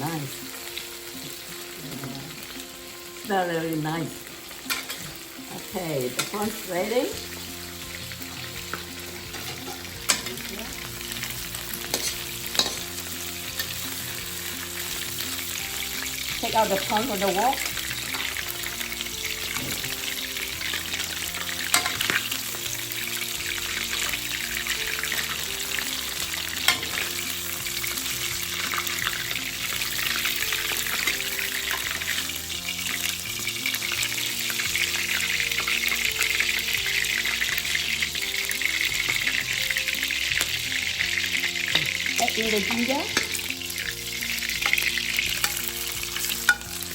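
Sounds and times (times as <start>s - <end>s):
oil sizzling in a wok: 0.0s - 46.9s
soft background music: 0.0s - 46.9s
utensil clicking against wok: 8.7s - 10.4s, 11.8s - 13.0s.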